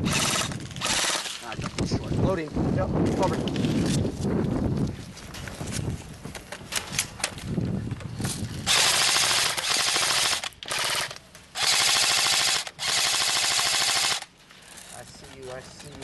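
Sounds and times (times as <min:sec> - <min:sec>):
airsoft rifle full-auto bursts: 0:00.0 - 0:01.4, 0:08.7 - 0:14.3.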